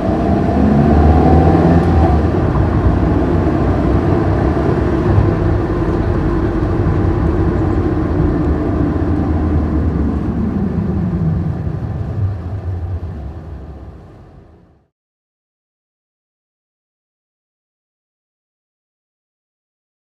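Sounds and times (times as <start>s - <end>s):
car cabin engine and road rumble: 0.0s - 14.9s
faint whine: 0.0s - 14.9s.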